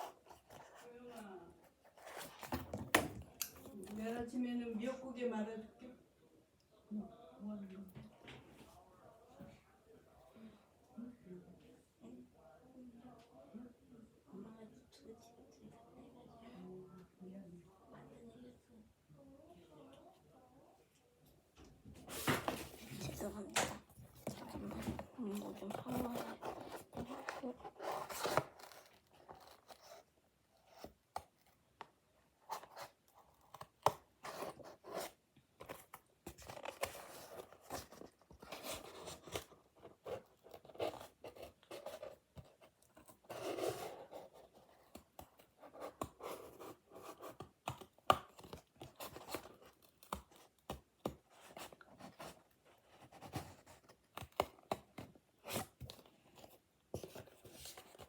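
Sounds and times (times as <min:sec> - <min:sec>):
paper rustling: 0:22.0 - 0:31.3.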